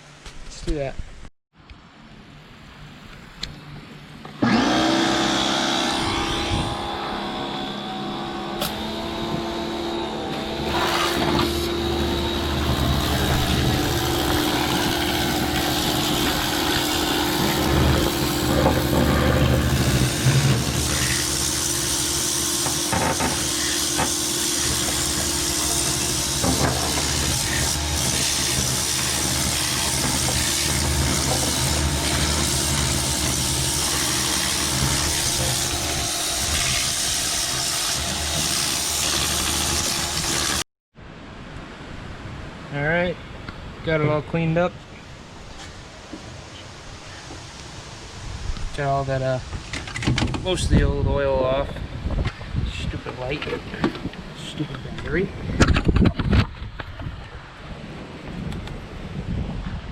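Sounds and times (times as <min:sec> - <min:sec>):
pressure washer jet hissing: 0:04.4 - 0:40.6.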